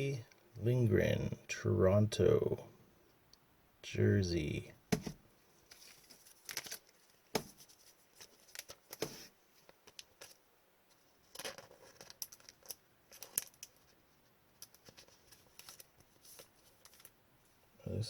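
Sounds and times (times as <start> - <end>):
cards and sleeves being handled: 5.0 - 17.2.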